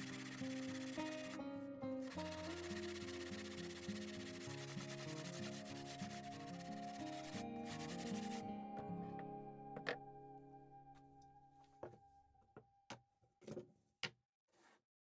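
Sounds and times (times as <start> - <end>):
sandpaper rubbing on wood: 0.0 - 1.4, 2.1 - 8.4
background music: 0.0 - 12.4.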